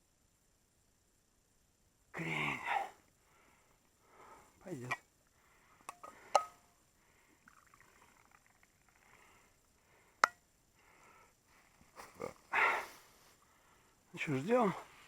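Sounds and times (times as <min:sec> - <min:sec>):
thermos and cup clinking: 0:05.9 - 0:06.6
faint rustling: 0:07.0 - 0:15.0.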